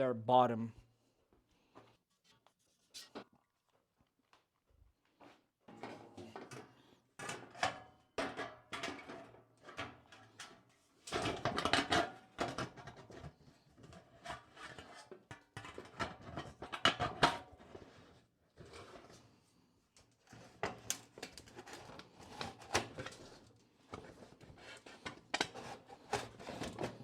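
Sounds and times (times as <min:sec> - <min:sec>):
knocks scrapes and rustles of handling: 0:08.8 - 0:19.6, 0:20.2 - 0:27.0.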